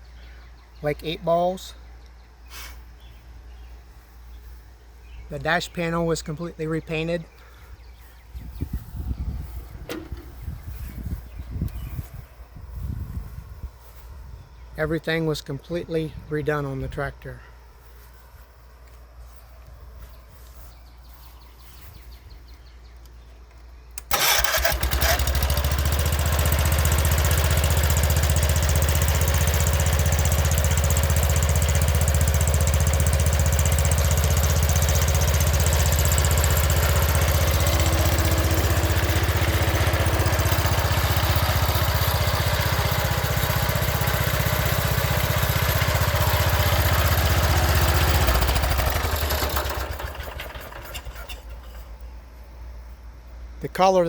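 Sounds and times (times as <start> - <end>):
garden tractor engine running: 5.2 - 12.1, 23.5 - 52.6.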